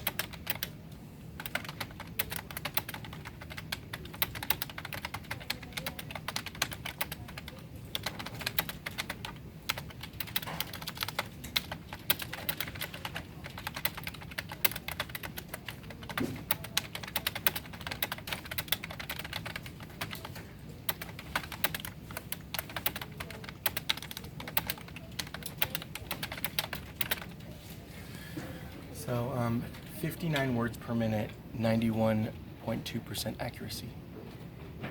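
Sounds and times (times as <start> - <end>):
fast typing on computer keyboard: 0.0 - 27.6.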